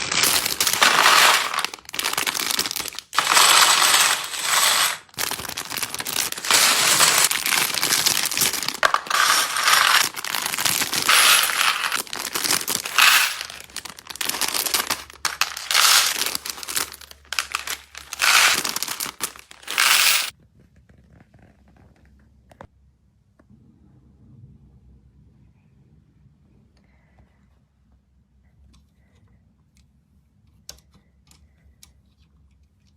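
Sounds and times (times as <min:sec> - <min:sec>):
packaging rustling: 0:00.0 - 0:20.3
plastic pieces clattering: 0:00.0 - 0:20.3.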